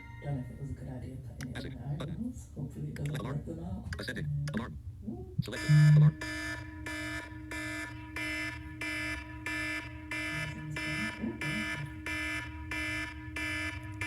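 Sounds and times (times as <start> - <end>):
pulsed electronic ringtone: 0.0 - 0.8, 5.5 - 14.0
loud low buzz: 5.5 - 14.0.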